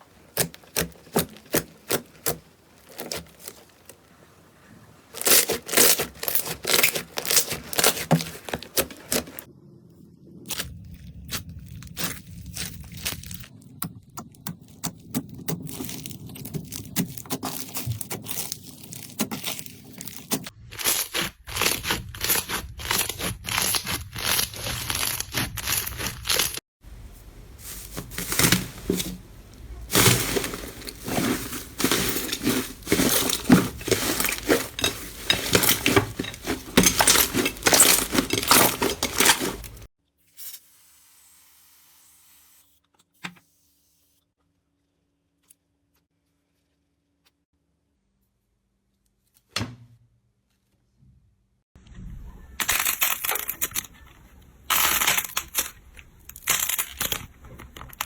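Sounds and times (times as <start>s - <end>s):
slime crackling and popping: 5.2s - 9.5s, 14.3s - 26.6s.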